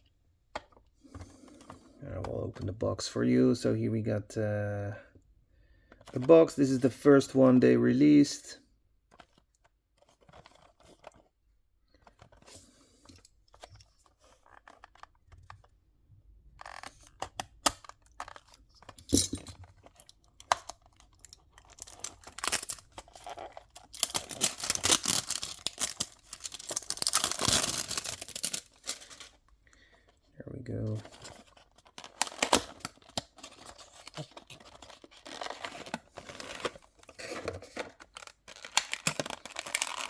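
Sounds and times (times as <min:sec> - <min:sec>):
packaging noise: 0:16.6 - 0:40.0.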